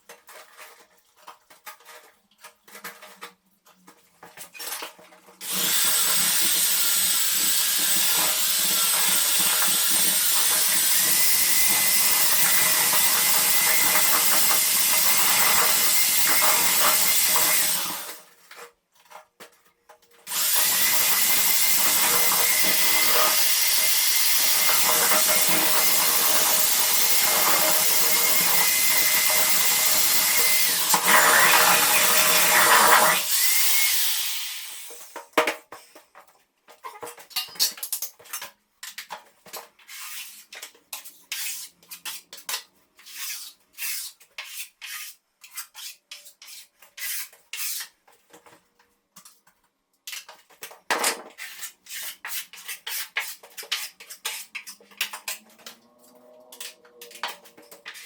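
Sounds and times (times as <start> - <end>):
power drill mixing plaster: 5.4 - 18.3, 20.2 - 35.2.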